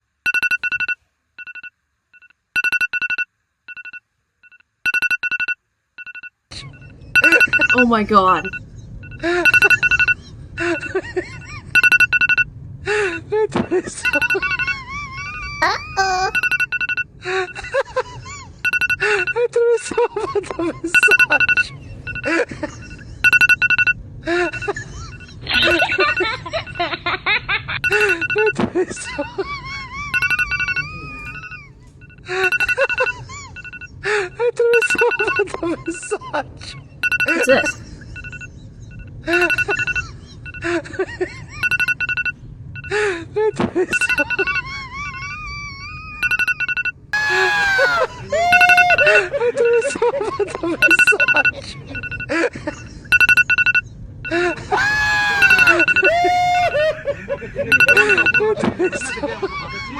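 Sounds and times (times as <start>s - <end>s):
electronic alarm beeping: 0.2s - 12.5s, 14.0s - 14.8s, 15.6s - 17.8s, 18.6s - 19.4s, 20.9s - 27.0s, 27.8s - 29.1s, 30.1s - 36.1s, 37.0s - 40.7s, 41.6s - 43.0s, 43.9s - 44.7s, 46.2s - 50.1s, 50.7s - 54.7s, 55.3s - 59.2s
person speaking: 15.6s - 16.5s, 37.2s - 37.8s.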